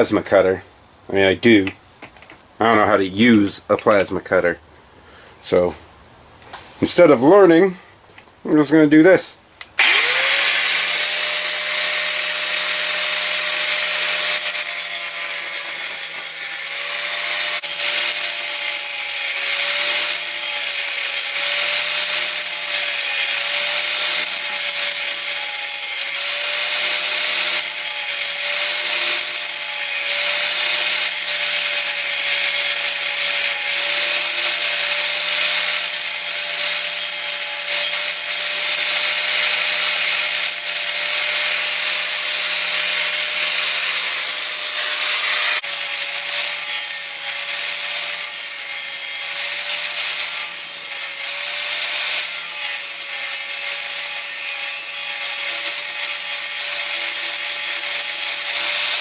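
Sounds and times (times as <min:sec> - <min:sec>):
abrasive wheel cutting metal: 0:09.8 - 0:59.0.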